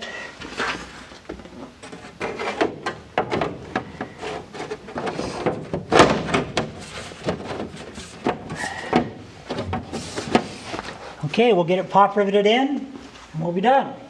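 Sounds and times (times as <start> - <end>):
panel clattering and rattling: 1.3 - 11.0.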